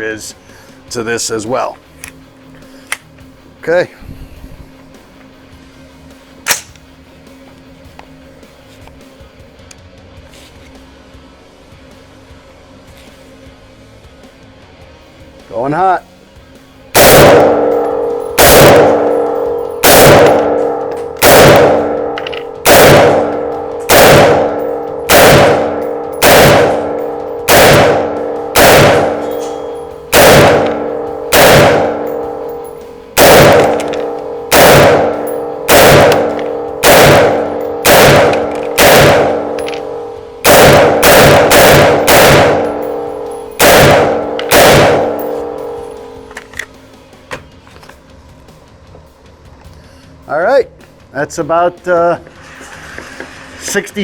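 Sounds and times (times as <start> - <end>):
rifle gunshots: 17.0 - 45.8.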